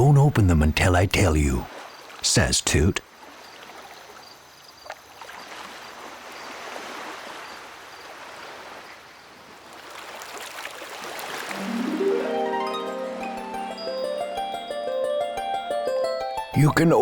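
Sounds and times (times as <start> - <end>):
water lapping: 3.1 - 11.7.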